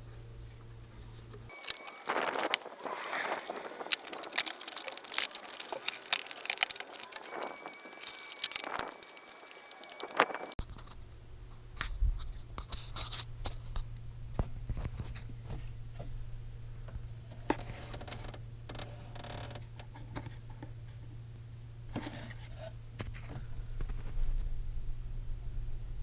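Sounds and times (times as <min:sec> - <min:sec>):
hands handling tools: 0:01.5 - 0:10.6.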